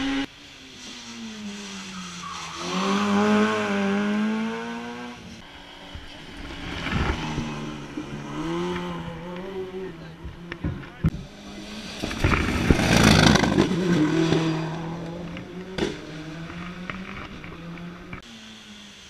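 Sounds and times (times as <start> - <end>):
race car engine revving: 0.0 - 18.5
tyre squeal: 0.8 - 3.6.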